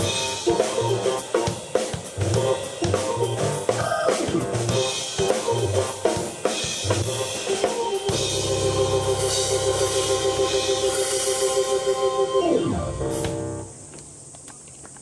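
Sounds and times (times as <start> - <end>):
drum kit beat: 0.0 - 12.0
rock jam on keyboard: 0.0 - 13.7
low drone: 8.1 - 13.8.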